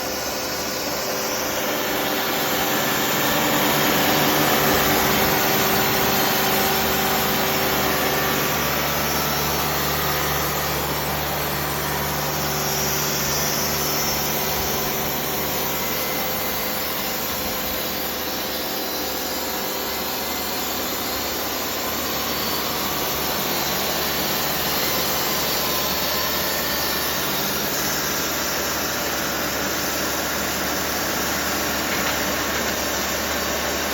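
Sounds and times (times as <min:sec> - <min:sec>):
diesel engine running: 0:00.0 - 0:18.8
band saw cutting log: 0:00.0 - 0:33.9.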